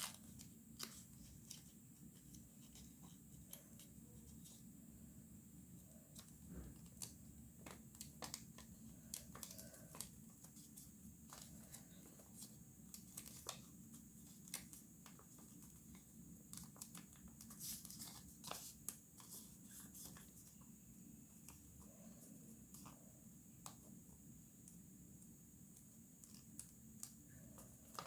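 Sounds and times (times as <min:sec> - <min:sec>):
paper crinkling and creasing: 0:00.0 - 0:04.6, 0:06.1 - 0:20.6, 0:26.2 - 0:28.0
low room hum: 0:00.0 - 0:28.0.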